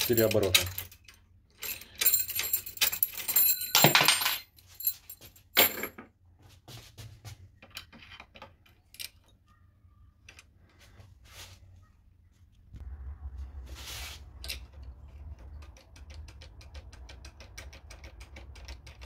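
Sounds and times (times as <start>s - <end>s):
metal keys jingling: 0.0s - 5.9s.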